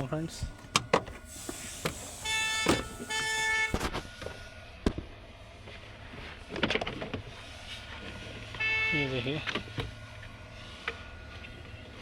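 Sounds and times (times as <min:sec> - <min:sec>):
low steady hum: 0:00.0 - 0:12.0
vehicle horn toots: 0:02.1 - 0:03.8, 0:08.5 - 0:09.4.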